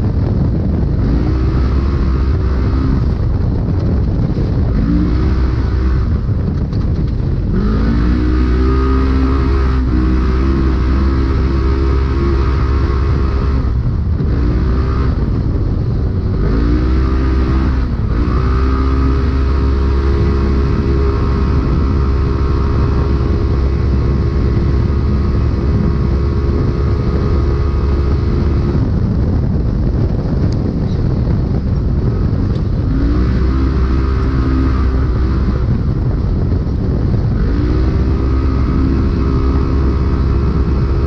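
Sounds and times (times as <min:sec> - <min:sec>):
engine running at high revs: 0:00.0 - 0:41.0
heavy low rumble: 0:00.0 - 0:41.0.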